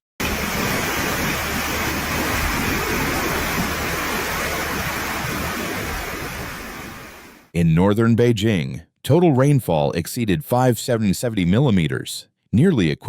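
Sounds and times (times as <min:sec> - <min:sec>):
water rushing: 0:00.2 - 0:07.5.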